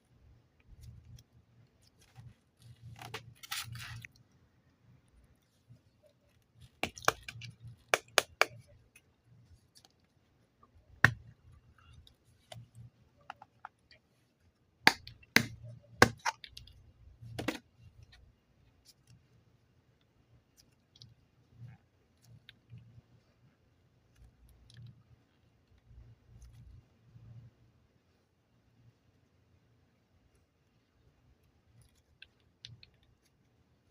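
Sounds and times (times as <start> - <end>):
faint low hum: 0.0 - 33.9
clay and packaging clicking: 5.4 - 10.2.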